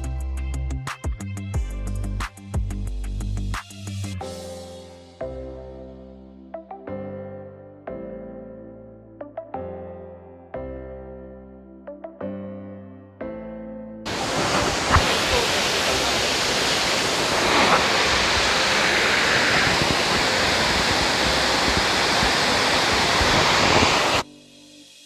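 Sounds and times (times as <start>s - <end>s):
waterfall rushing: 14.1s - 24.2s.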